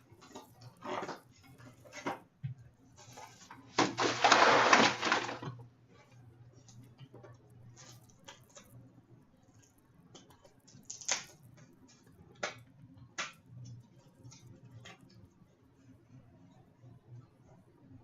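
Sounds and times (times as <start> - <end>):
packaging rustling and scraping: 3.0 - 5.6.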